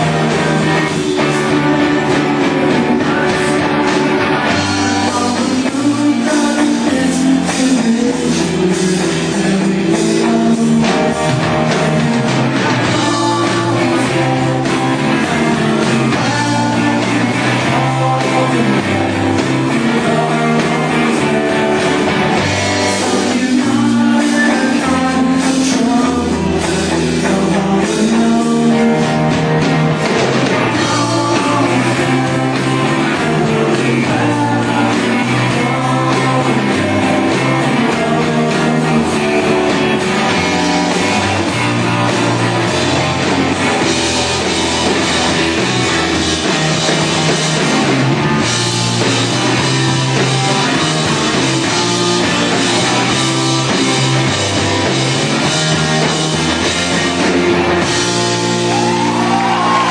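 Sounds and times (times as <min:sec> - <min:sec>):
rock band playing: 0:00.0 - 0:59.9.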